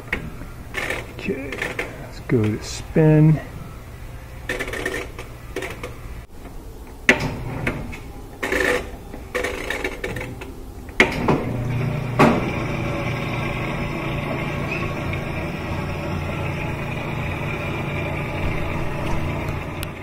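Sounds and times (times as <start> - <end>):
washing machine motor humming: 7.0 - 20.0.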